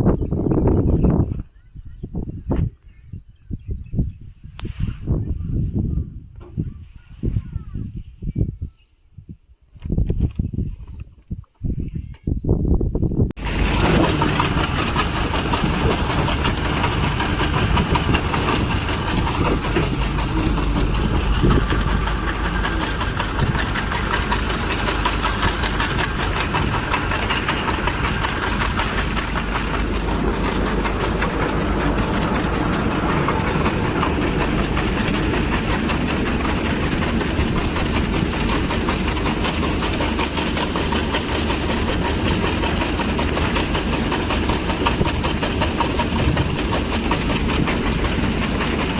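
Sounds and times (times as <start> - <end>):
harvester engine running: 13.4 - 48.9
threshing works rushing hiss: 13.4 - 48.9.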